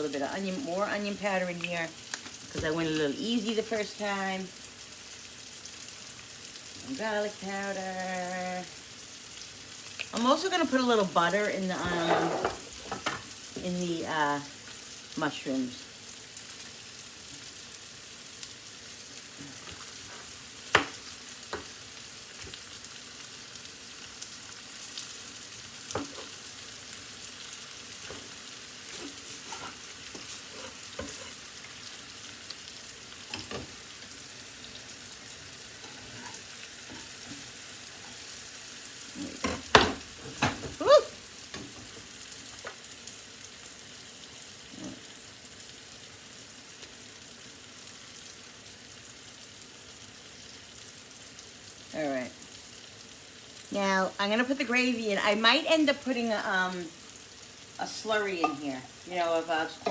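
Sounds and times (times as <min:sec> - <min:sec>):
mushrooms sizzling in a pan: 0:00.0 - 0:59.9
spoon knocking and scraping pan: 0:11.8 - 0:13.7, 0:19.4 - 0:21.8, 0:25.9 - 0:26.4, 0:28.0 - 0:31.5, 0:33.3 - 0:33.8, 0:35.8 - 0:38.2, 0:39.2 - 0:40.8, 0:41.5 - 0:42.8, 0:58.4 - 0:58.8.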